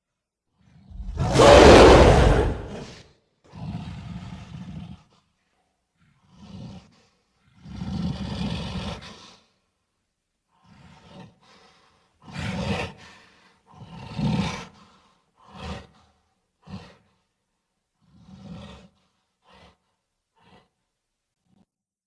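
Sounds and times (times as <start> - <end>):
monster roaring and grunting: 0.9 - 3.0.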